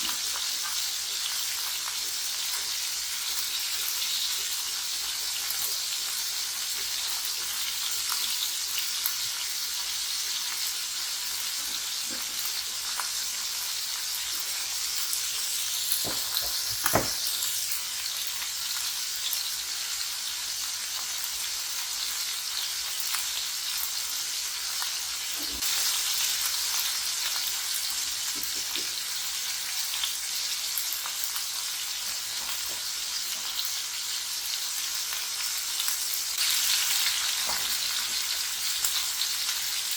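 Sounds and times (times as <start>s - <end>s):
food sizzling in hot oil: 0.0s - 39.9s
sharp knock: 16.9s - 17.2s.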